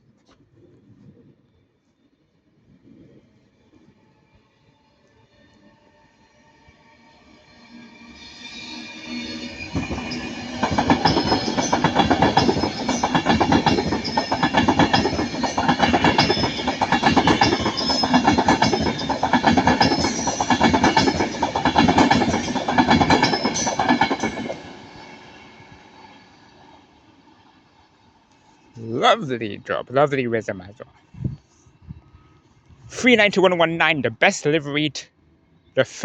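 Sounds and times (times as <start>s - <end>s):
train wheels clattering: 9.7s - 24.7s.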